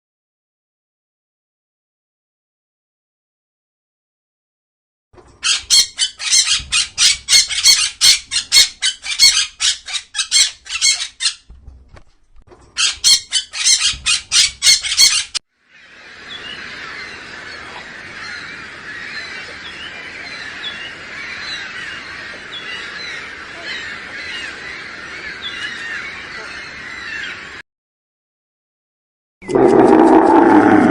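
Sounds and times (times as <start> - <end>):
chorus of many birds: 5.2 - 11.5, 12.6 - 27.6
harsh high-pitched bird calls: 5.4 - 11.5, 12.8 - 27.6.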